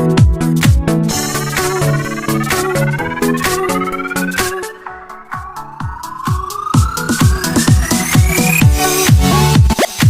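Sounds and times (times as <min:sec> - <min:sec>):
electronic dance music: 0:01.0 - 0:10.0
rising synth tone: 0:01.1 - 0:08.7.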